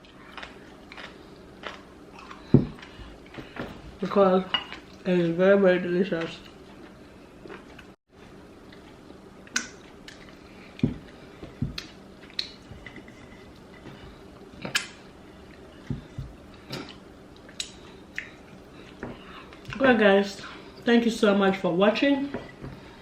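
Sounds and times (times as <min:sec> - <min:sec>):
soft low thumps: 0:02.5 - 0:04.0, 0:10.8 - 0:11.8.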